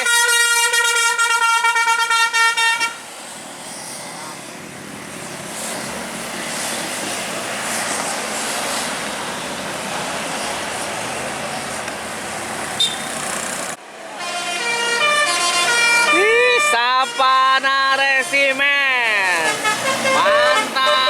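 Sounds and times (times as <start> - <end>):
bus multi-tone horn: 0.0 - 3.0, 12.8 - 13.2, 14.2 - 18.6, 19.2 - 21.0
bus passing close by: 0.3 - 16.1, 19.0 - 21.0.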